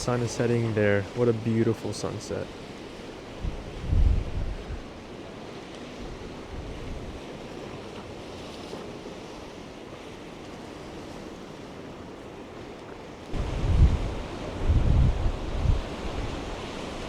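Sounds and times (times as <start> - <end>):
wind rumbling on microphone: 0.0 - 1.2, 3.1 - 5.0, 6.0 - 7.3, 13.3 - 17.0
ocean waves washing on shore: 0.0 - 17.0.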